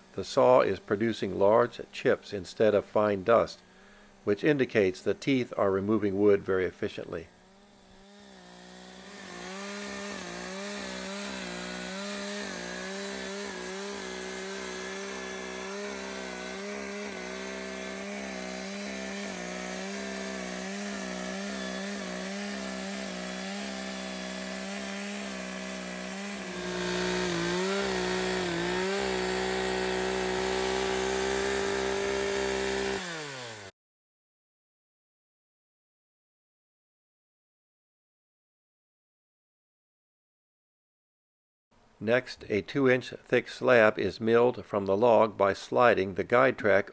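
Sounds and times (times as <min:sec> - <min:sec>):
chainsaw cutting through log: 0:00.0 - 0:33.7.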